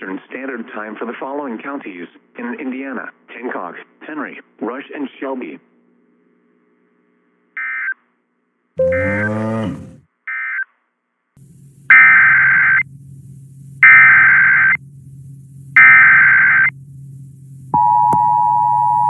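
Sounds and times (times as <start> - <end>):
low hum: 8.8 - 10.0, 11.4 - 19.0
steady attention tone: 8.8 - 10.0, 11.4 - 19.0
alert data bursts: 15.8 - 16.7.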